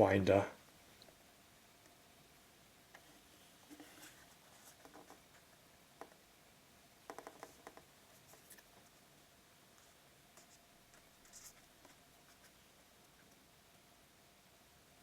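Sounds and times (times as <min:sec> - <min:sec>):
small clicks and taps: 0:07.1 - 0:08.6.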